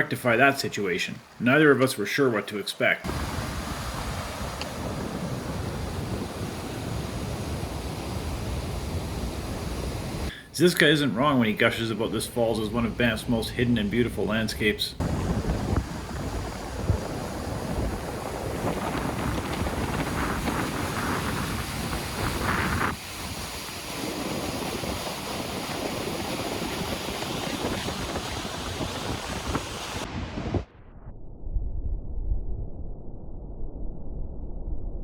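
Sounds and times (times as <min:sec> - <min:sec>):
waterfall roaring: 0:03.1 - 0:10.3
wind on microphone: 0:03.1 - 0:10.3, 0:15.0 - 0:30.7.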